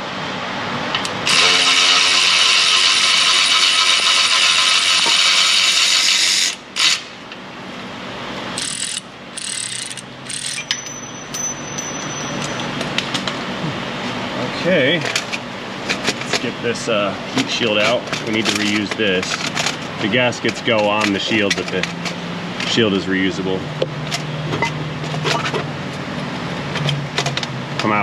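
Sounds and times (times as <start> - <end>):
power ratchet spinning: 1.2 - 7.1, 8.6 - 10.9.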